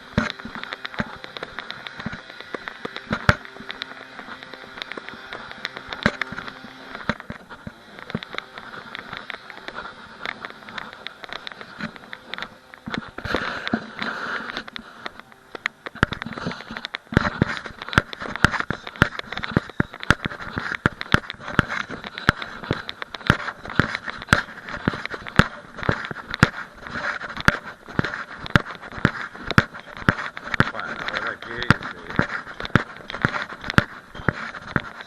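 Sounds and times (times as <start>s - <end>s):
sharp clicks and knocks: 0.0s - 35.0s.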